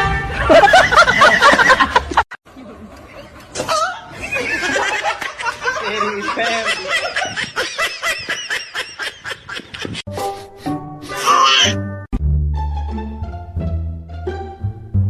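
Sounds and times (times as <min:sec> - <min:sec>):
music: 0:00.0 - 0:00.5, 0:10.1 - 0:15.0
person laughing hard: 0:00.3 - 0:02.2, 0:03.6 - 0:11.8.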